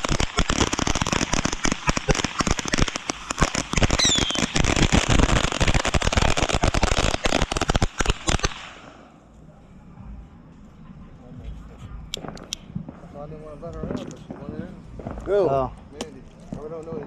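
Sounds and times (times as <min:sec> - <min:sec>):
fireworks crackling pops: 0:00.0 - 0:09.1, 0:11.6 - 0:17.0
falling firework whistle: 0:01.7 - 0:05.3.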